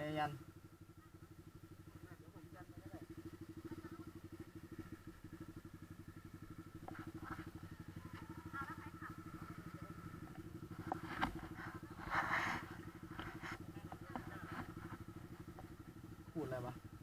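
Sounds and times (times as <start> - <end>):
motorcycle engine idling: 0.0 - 17.0
faint voices: 6.6 - 15.4.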